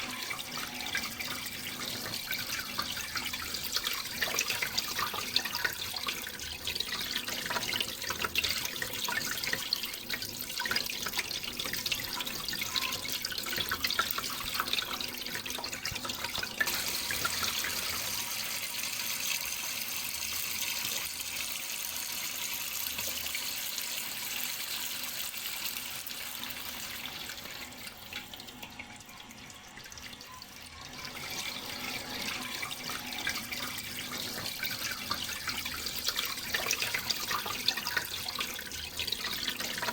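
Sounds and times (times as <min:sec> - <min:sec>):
water running and splashing: 0:00.0 - 0:19.8, 0:31.1 - 0:39.9.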